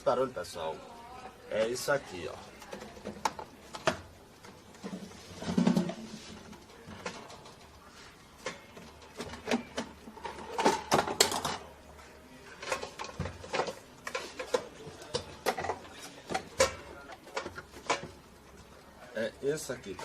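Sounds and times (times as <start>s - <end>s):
fan clicking and rattling: 12.6s - 18.8s.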